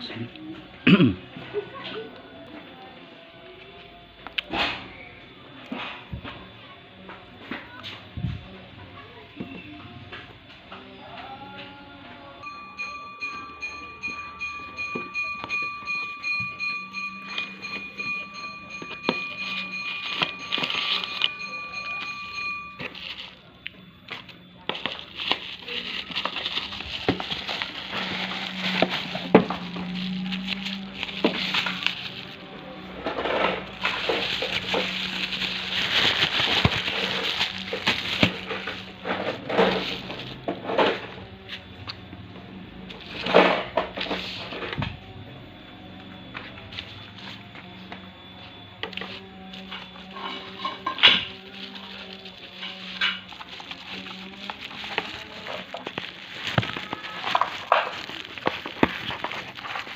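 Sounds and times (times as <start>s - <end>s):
steady high-pitched whine: 12.2s - 59.9s
packaging rustling and tearing: 19.0s - 23.5s, 24.1s - 40.5s, 48.9s - 59.9s.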